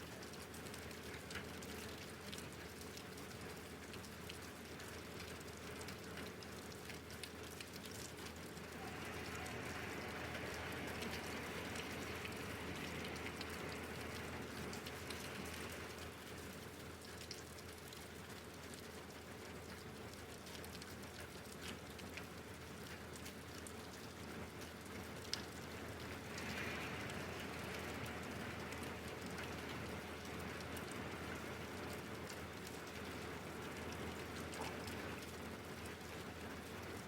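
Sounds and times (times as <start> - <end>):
faint steady hum: 0.0 - 37.0
raindrops ticking on surfaces: 0.0 - 37.0
steady rain falling: 0.0 - 37.0.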